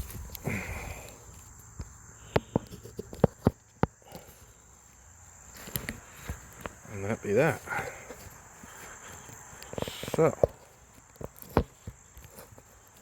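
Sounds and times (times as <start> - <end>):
insect chirring: 0.0 - 13.0
sharp clicks and knocks: 1.4 - 4.3.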